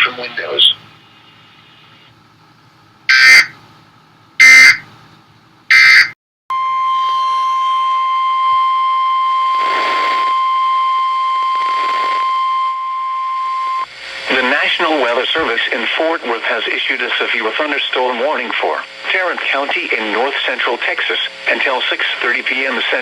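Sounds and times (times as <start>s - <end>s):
faint radio hiss: 0.0s - 2.2s, 14.1s - 23.0s
digital data bursts: 3.1s - 3.5s, 4.4s - 4.8s
steady alarm tone: 3.1s - 3.6s, 4.4s - 4.9s, 5.7s - 13.9s.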